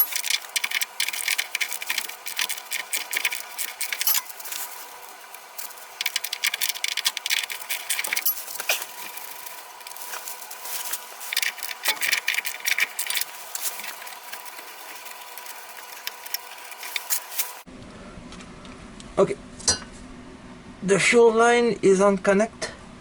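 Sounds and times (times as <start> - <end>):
hand tools and metal clinking: 0.0 - 17.6.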